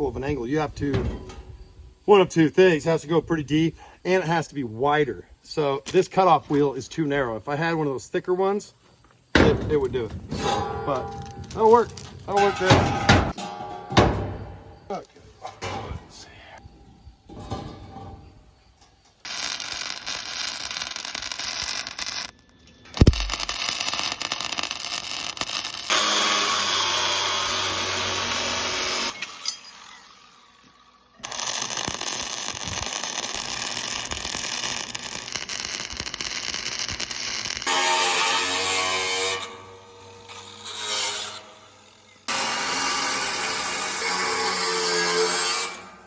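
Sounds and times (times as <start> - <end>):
loud thump: 9.3 - 14.7, 23.0 - 23.4.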